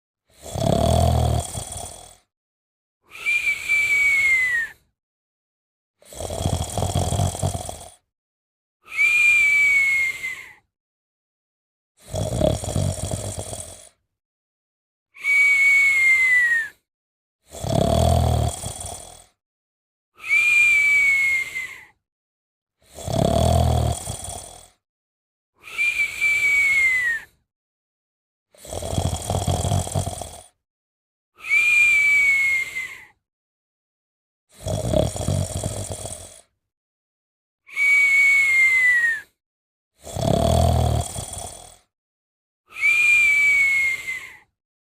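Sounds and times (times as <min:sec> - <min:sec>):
rumbling snore: 0:00.3 - 0:02.3, 0:06.0 - 0:08.1, 0:12.0 - 0:14.0, 0:17.5 - 0:19.4, 0:22.8 - 0:24.8, 0:28.6 - 0:30.6, 0:34.5 - 0:36.6, 0:40.0 - 0:41.9
whistling snore: 0:00.3 - 0:02.3, 0:03.1 - 0:05.0, 0:06.0 - 0:08.1, 0:08.8 - 0:10.7, 0:12.0 - 0:14.0, 0:15.2 - 0:19.4, 0:20.2 - 0:22.0, 0:22.8 - 0:24.8, 0:25.6 - 0:27.5, 0:28.5 - 0:30.6, 0:31.4 - 0:33.2, 0:34.5 - 0:36.6, 0:37.7 - 0:39.4, 0:40.0 - 0:41.9, 0:42.7 - 0:44.6
whistle: 0:03.1 - 0:04.8, 0:08.9 - 0:10.4, 0:15.2 - 0:16.7, 0:20.2 - 0:21.7, 0:25.6 - 0:27.3, 0:31.4 - 0:33.0, 0:37.7 - 0:39.3, 0:42.7 - 0:44.4.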